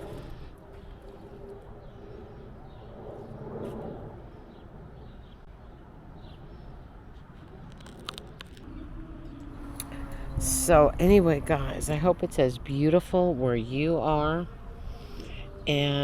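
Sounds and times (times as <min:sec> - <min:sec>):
low steady rumble: 0:08.6 - 0:16.0.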